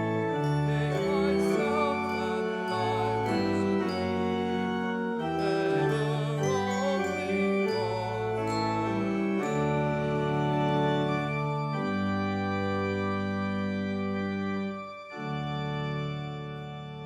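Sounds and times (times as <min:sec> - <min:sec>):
organ playing sustained chords: 0:00.0 - 0:17.0.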